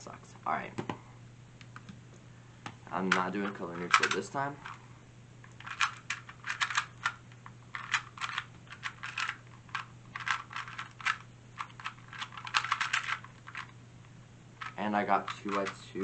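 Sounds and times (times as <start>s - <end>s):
plastic puzzle cube clicking: 3.1s - 4.2s, 5.5s - 7.2s, 7.8s - 13.7s.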